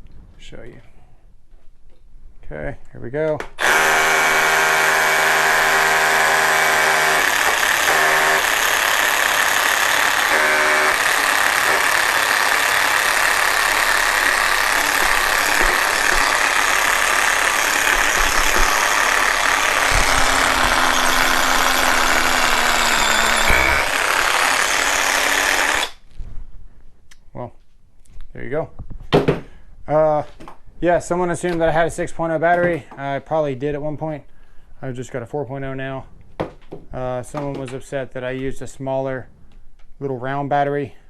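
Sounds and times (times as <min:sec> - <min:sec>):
drill motor whine: 0:03.6 - 0:26.0
hammer drill rattling into concrete: 0:03.6 - 0:26.1.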